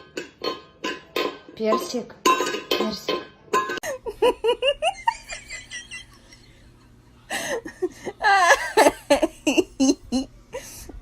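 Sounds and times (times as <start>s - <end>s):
person laughing: 3.8s - 6.4s, 7.3s - 10.9s.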